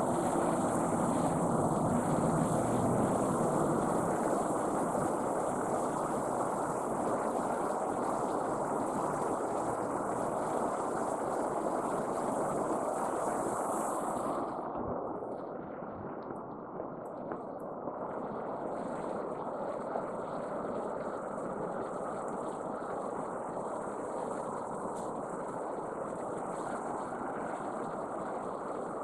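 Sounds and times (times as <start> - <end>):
high steady hiss: 0.0 - 15.6.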